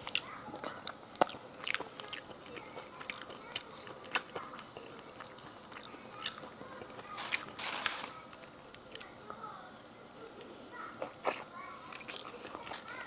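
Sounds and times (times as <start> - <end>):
wet chewing: 0.0 - 7.6, 11.0 - 13.0.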